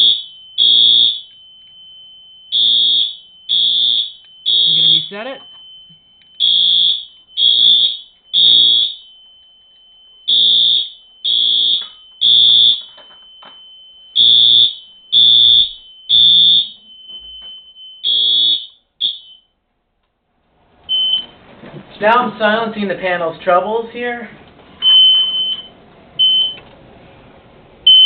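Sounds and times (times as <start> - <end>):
faint steady high tone: 0.0 - 2.6, 4.2 - 6.4, 9.0 - 10.3, 12.8 - 14.2, 16.7 - 18.0
fire alarm blasts: 0.0 - 19.6, 20.9 - 21.4, 24.8 - 26.6.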